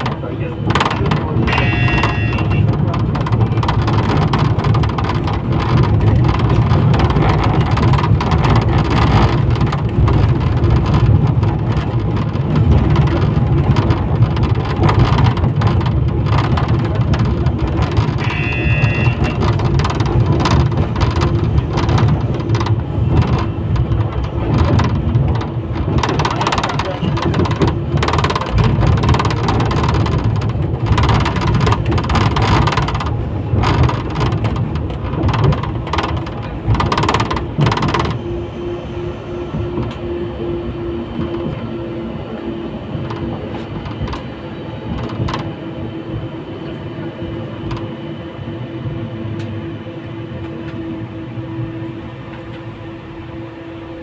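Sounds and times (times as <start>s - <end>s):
knocks and rattles: 0.0s - 38.2s
tram wheels rumbling on rails: 0.0s - 54.0s.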